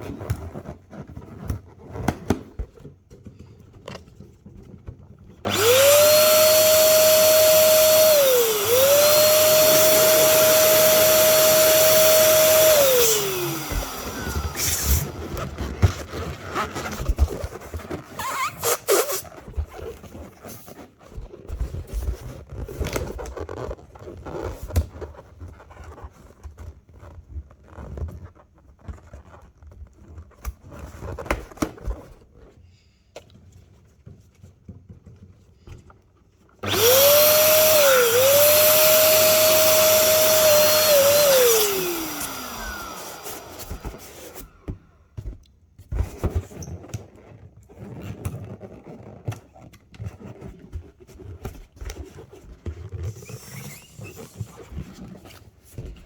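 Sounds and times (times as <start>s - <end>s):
rubber balloons rustling and squeaking: 0.0s - 32.7s, 33.4s - 56.0s
electric balloon inflator whining: 5.5s - 15.7s, 36.6s - 44.9s.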